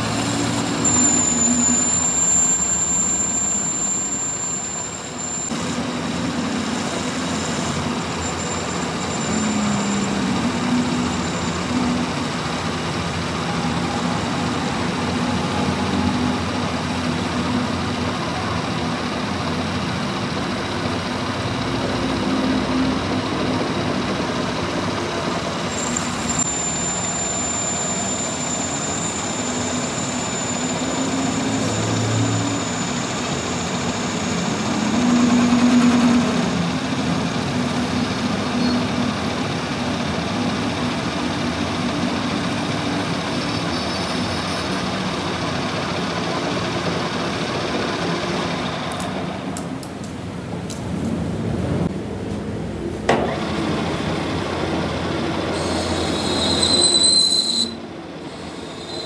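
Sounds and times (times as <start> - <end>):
thin high whine: 25.7 - 35.8.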